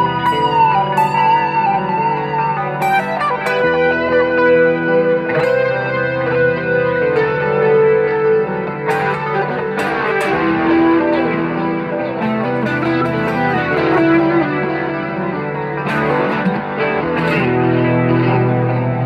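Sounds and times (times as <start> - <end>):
electric guitar notes and chords: 0.0 - 19.0.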